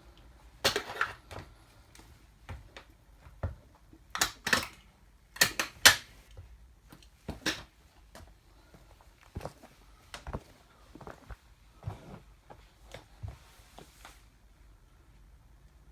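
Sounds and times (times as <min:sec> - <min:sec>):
plastic toy parts cracking: 0:04.2 - 0:04.8, 0:05.4 - 0:06.1.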